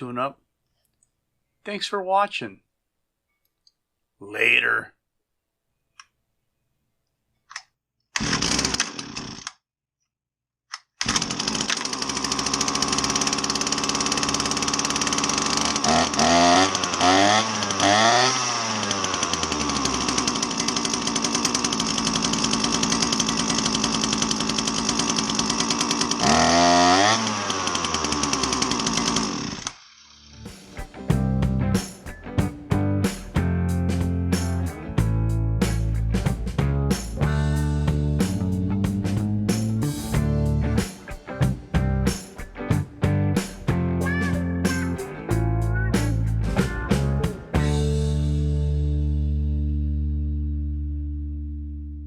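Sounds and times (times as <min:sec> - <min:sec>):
brush cutter engine revving: 0:08.2 - 0:09.6, 0:11.0 - 0:30.8.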